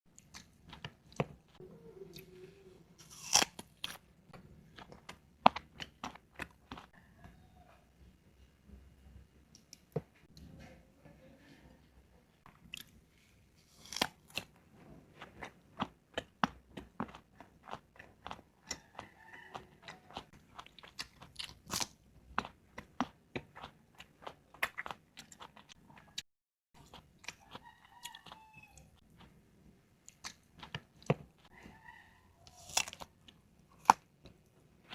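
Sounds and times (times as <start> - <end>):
crunchy chewing and biting: 3.0 - 7.0, 13.7 - 26.2, 26.8 - 29.4, 30.1 - 34.9.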